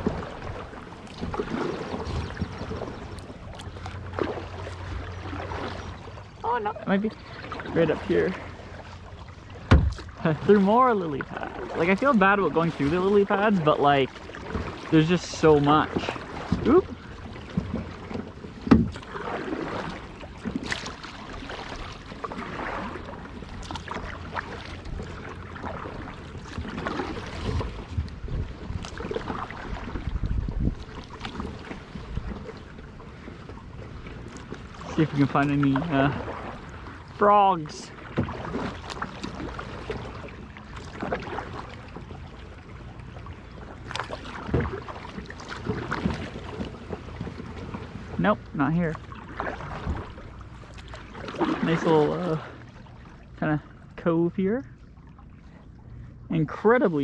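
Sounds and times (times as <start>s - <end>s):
paddle strokes in water: 0.0s - 57.0s
knocks against kayak hull: 9.6s - 10.1s, 18.6s - 19.0s.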